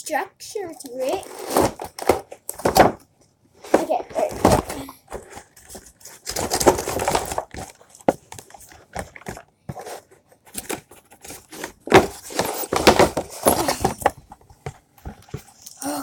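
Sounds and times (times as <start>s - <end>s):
packaging rustling and tearing: 3.8s - 14.1s.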